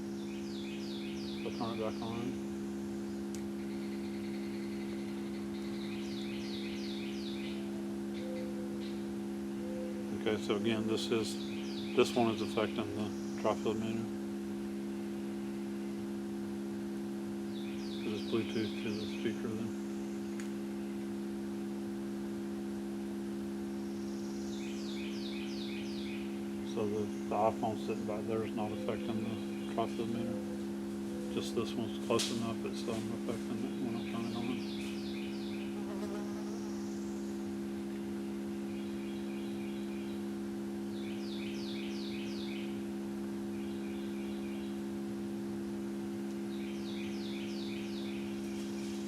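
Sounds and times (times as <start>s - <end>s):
electronic tone hum: 0.0s - 49.0s
bird chirping: 0.1s - 2.4s, 3.6s - 10.2s, 11.0s - 13.8s, 17.5s - 19.7s, 23.9s - 38.0s, 38.7s - 40.2s, 40.9s - 42.8s, 43.5s - 44.8s, 46.5s - 49.0s.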